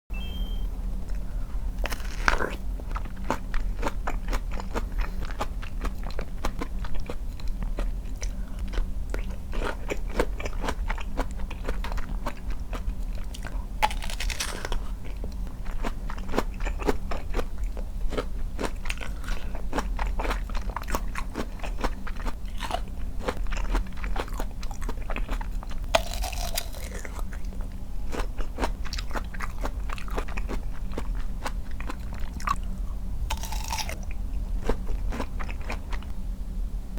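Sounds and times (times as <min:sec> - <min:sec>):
steady low hum: 0:00.1 - 0:36.9
biting and wet chewing of peach: 0:01.1 - 0:36.1.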